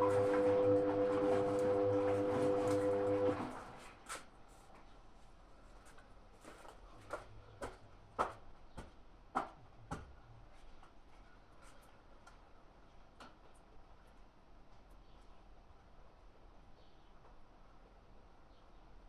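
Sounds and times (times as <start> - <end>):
washing machine low hum: 0.0 - 3.9.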